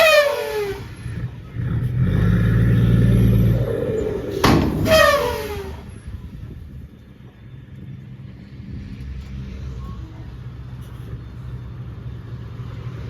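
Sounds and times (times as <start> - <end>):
diesel engine revving: 0.0 - 6.7
loud metallic bangs ringing: 3.2 - 6.1.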